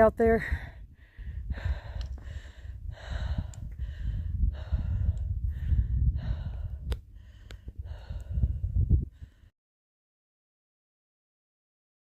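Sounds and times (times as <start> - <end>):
low microphone rumble: 0.4 - 9.4
person breathing heavily: 0.4 - 9.5.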